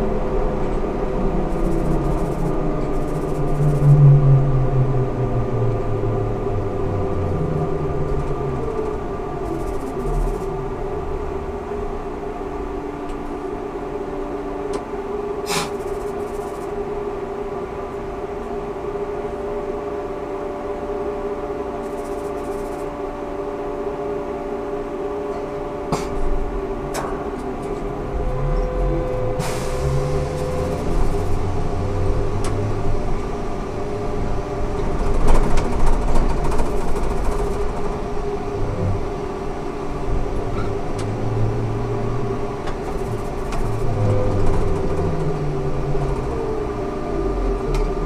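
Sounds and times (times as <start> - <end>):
falling whine: 0.0 - 35.3
trolleybus electric drive humming: 0.0 - 48.0.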